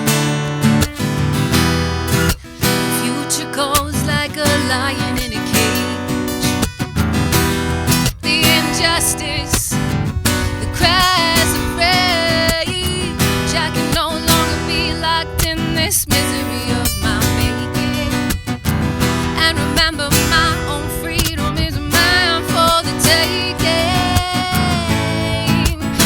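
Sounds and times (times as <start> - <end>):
acoustic guitar strumming: 0.0 - 26.0
person singing: 2.6 - 6.0, 8.2 - 18.3, 19.3 - 26.0.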